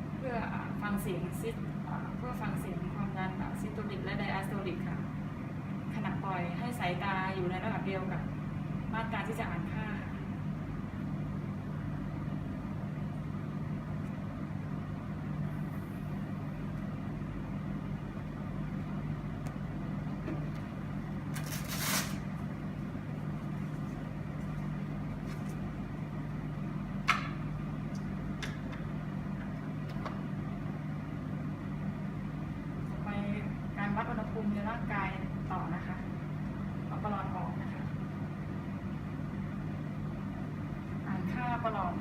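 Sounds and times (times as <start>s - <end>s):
low equipment hum: 0.0s - 42.0s.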